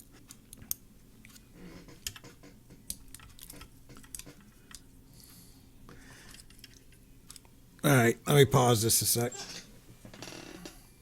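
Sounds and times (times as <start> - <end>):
faint clicks of small parts: 0.0 - 7.6.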